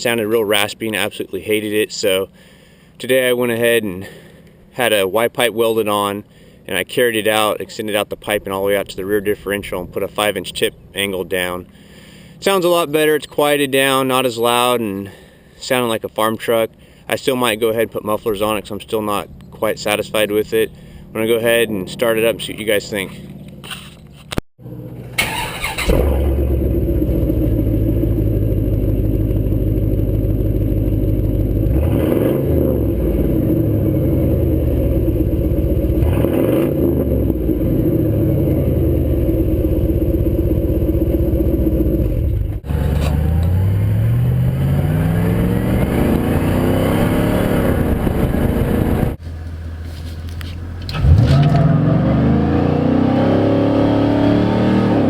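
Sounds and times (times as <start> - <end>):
truck accelerating: 18.2 - 55.0
truck exhaust idling and revving: 25.9 - 55.0.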